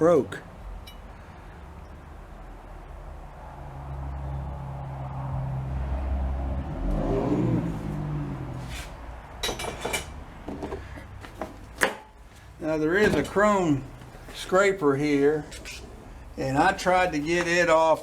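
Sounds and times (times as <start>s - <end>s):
vehicle engine passing by: 1.7s - 10.5s.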